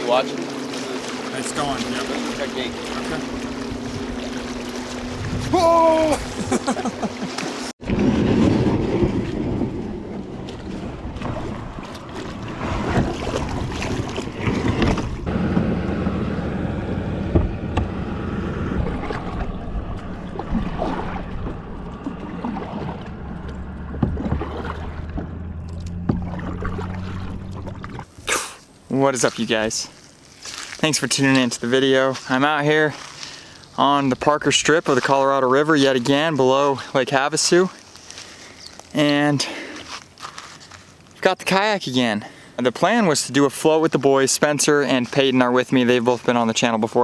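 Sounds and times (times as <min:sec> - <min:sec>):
river water: 0:00.0 - 0:47.0
wind buffeting microphone: 0:01.4 - 0:06.7, 0:07.8 - 0:28.1.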